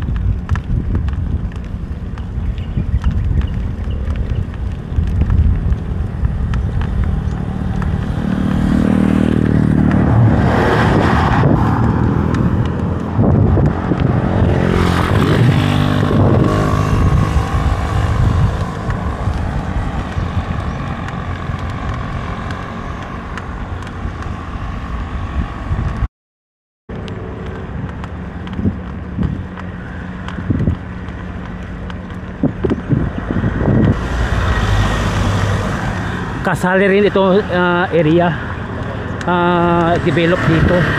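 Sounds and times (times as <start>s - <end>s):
steady outdoor rumble: 0.0s - 26.1s, 26.9s - 40.9s
vehicle engine passing by: 5.6s - 26.1s, 32.4s - 40.9s.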